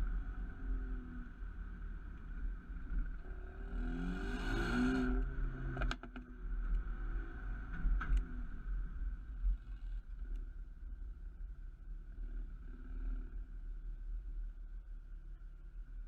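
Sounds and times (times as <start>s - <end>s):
car engine revving: 2.7s - 6.0s
exhaust pops and crackles: 5.2s - 6.9s.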